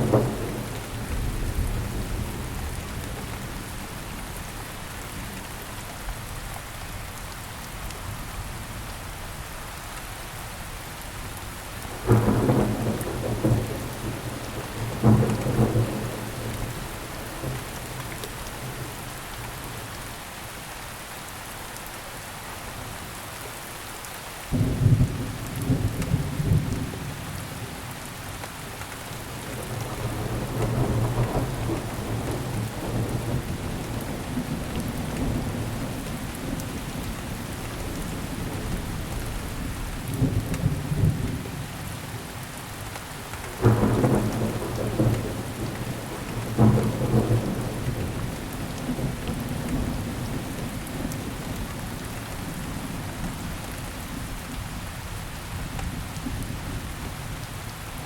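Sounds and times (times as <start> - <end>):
thunder claps and rumbling: 0.0 - 4.2, 11.9 - 19.9, 29.2 - 41.6, 43.4 - 54.2
steady rain falling: 0.0 - 58.0.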